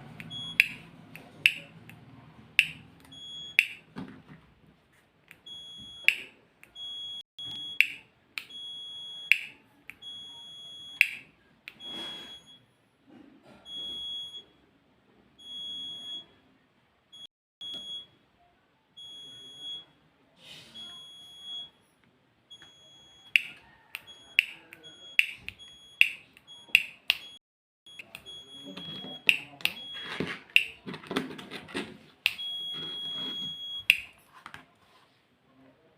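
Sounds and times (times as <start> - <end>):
doorbell buzzer beeping: 0.2 - 0.9, 5.5 - 11.2, 11.8 - 12.6, 22.6 - 30.7, 32.3 - 34.1
sharp switch click: 0.2 - 1.7, 9.3 - 9.6, 11.0 - 11.2, 23.4 - 23.6.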